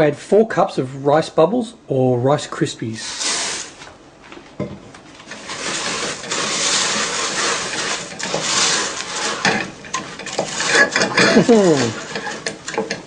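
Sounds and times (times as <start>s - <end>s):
rice cereal poured into saucepan: 5.3s - 9.6s, 11.4s - 12.0s.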